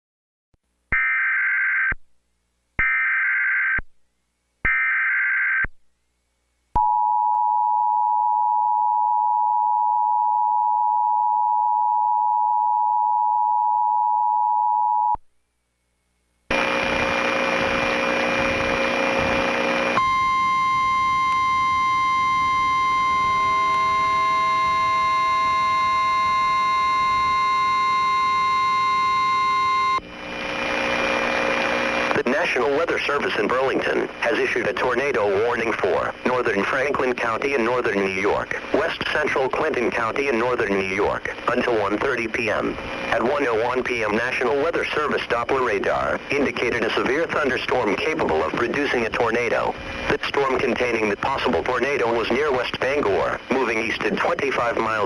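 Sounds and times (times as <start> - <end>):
radio hiss: 16.5 - 55.0
screeching digital data tones: 20.0 - 30.0
two-tone attention signal: 20.0 - 30.0.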